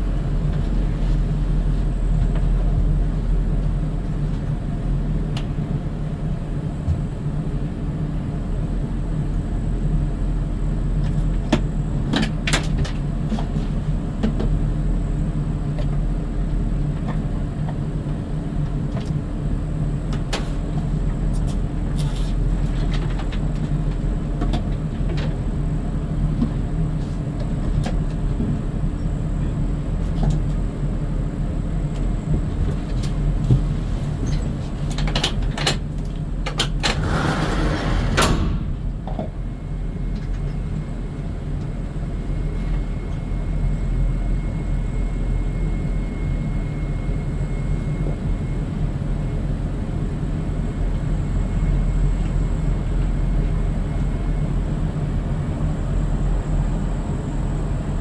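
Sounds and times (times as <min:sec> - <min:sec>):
motor vehicle rumbling: 0:36.2 - 0:41.2
burst of clatter and hiss: 0:36.9 - 0:39.1.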